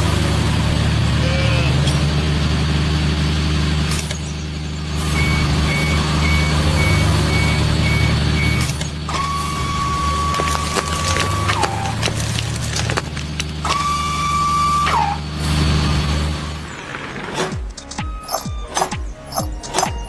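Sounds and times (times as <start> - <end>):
truck engine running: 0.0 - 20.0
reversing alarm beeping: 5.0 - 12.0.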